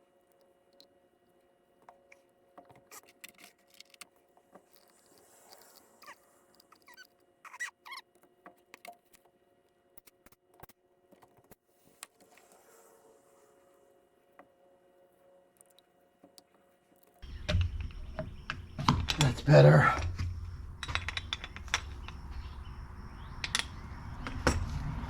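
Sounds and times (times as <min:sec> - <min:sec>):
faint steady hum: 0:17.2 - 0:25.0
short squeaks: 0:17.2 - 0:25.0
small metal parts clicking: 0:17.2 - 0:25.0.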